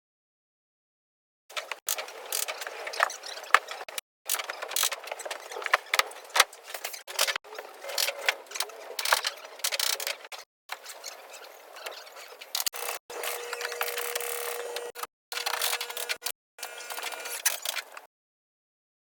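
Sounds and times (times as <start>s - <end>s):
tools clicking and rattling: 1.5s - 11.0s.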